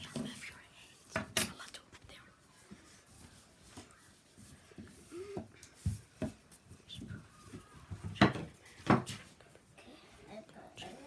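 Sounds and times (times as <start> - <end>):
rubbing modelling clay: 2.4 - 11.0.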